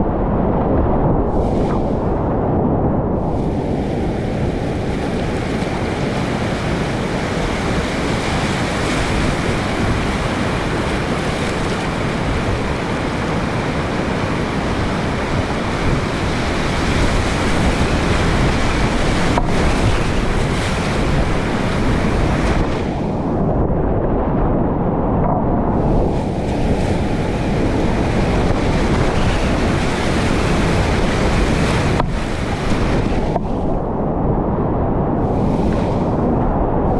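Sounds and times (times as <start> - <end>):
wind noise on microphone: 0.0 - 36.9
rapids rushing: 3.2 - 23.2, 25.8 - 33.9.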